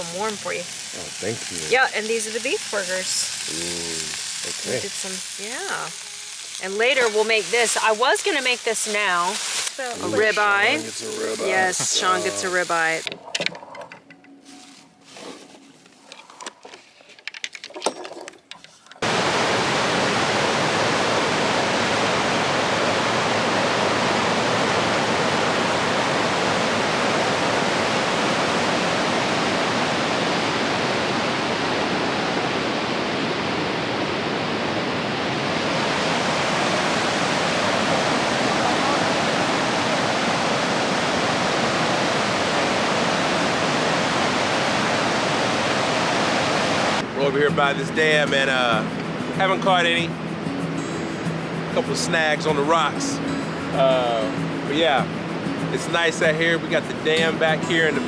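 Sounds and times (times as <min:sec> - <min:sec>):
water rushing through dam: 0:19.0 - 0:47.1.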